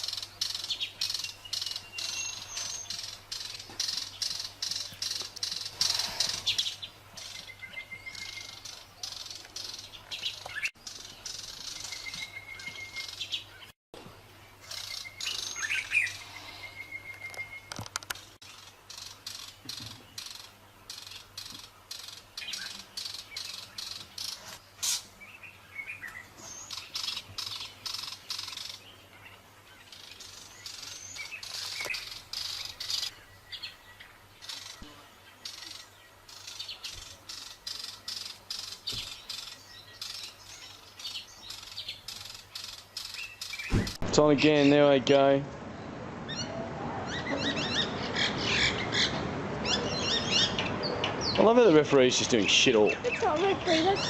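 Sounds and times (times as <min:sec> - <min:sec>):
birds chirping: 0:00.0 - 0:54.0.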